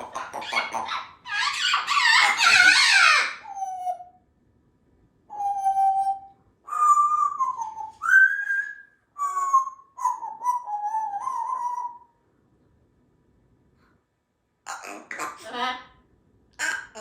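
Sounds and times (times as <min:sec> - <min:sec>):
parrot whistling: 0:00.0 - 0:04.1, 0:05.3 - 0:12.1.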